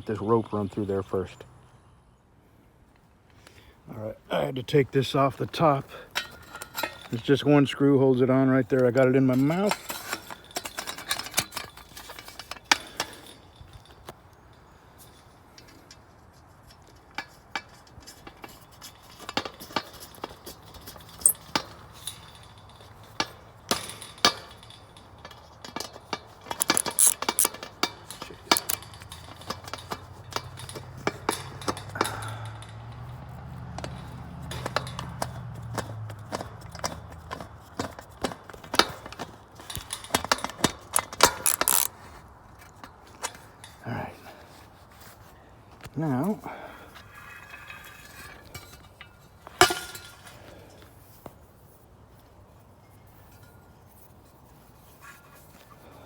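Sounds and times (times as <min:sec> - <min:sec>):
metal clicks and clinks: 0:05.2 - 0:16.1, 0:16.7 - 0:42.0.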